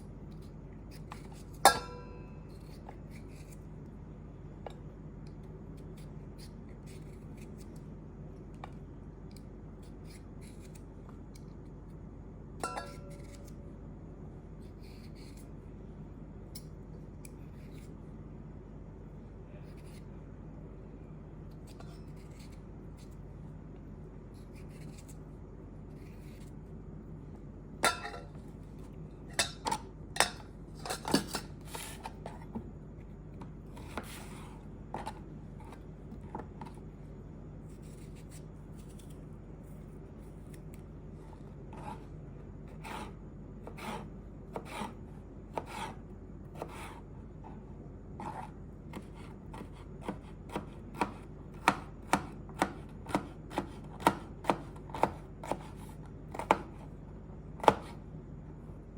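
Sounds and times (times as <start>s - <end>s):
knife cutting on board: 42.8s - 45.0s, 46.6s - 47.0s, 48.2s - 56.8s, 57.6s - 58.0s.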